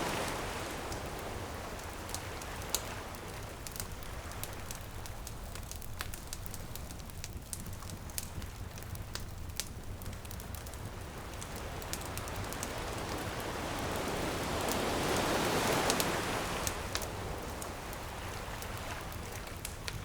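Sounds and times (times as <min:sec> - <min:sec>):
wave washing in: 0:00.0 - 0:05.0, 0:11.1 - 0:19.3
surf rumble: 0:00.0 - 0:20.0
campfire crackling and popping: 0:00.1 - 0:20.0.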